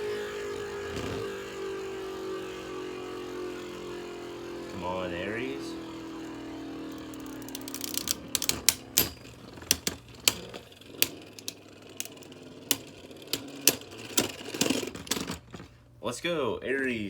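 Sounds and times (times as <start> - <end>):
spinning tops whirring: 0.0 - 15.7
spinning tops clacking together: 7.1 - 15.4.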